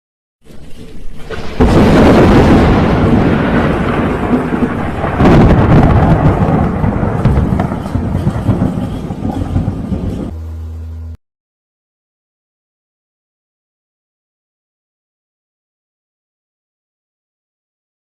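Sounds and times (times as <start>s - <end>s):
thunder clap: 1.2s - 10.3s
thunder rumbling: 1.2s - 10.4s.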